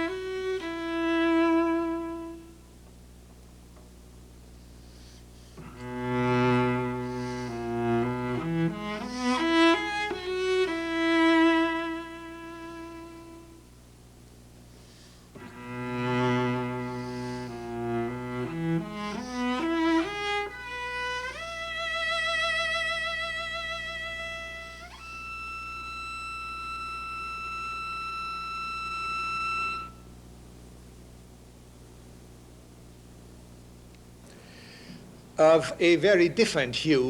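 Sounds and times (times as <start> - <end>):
solo cello playing: 0.0 - 2.6, 5.6 - 13.7, 15.4 - 30.1.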